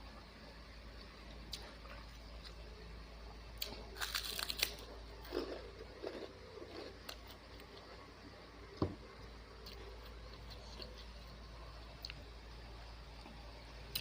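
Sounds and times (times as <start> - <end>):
crisp crunching: 3.6 - 7.9
soft chewing: 3.6 - 12.4.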